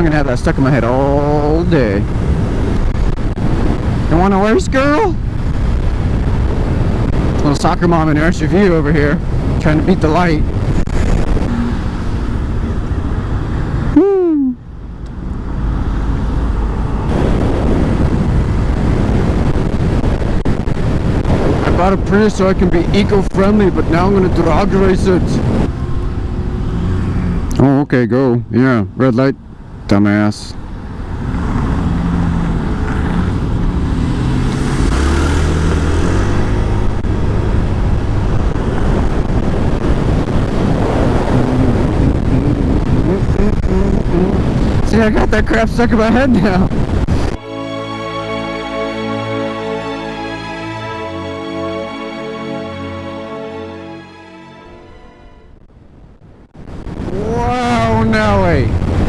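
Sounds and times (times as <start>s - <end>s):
wind noise: 0.0s - 27.5s.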